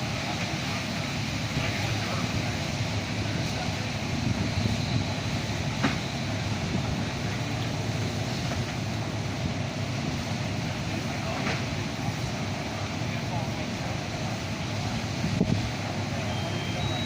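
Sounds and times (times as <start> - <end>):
wind rumbling over microphone: 14.9 - 15.8.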